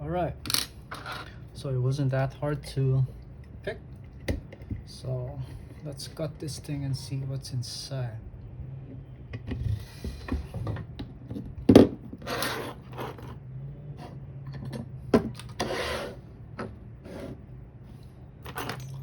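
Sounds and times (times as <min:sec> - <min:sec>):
metal scrapes: 0:15.5 - 0:16.2.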